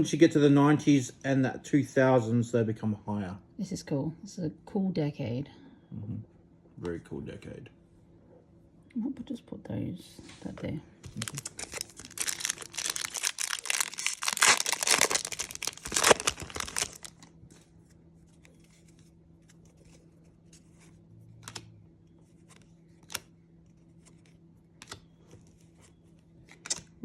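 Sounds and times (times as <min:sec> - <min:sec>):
foil wrapper tearing and crinkling: 0:11.1 - 0:17.4.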